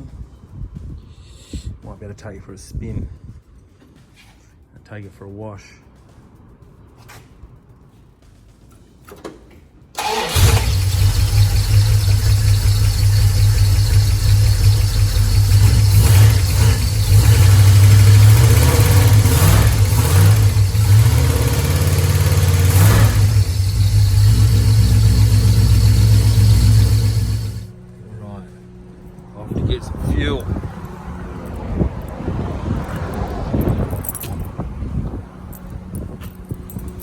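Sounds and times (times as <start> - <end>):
car engine starting and running: 10.0 - 27.8.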